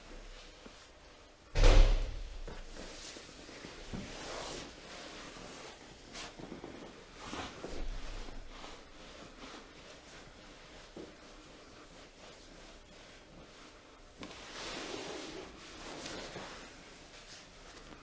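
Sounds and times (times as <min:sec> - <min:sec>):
loud deep thump: 0:01.6 - 0:02.8.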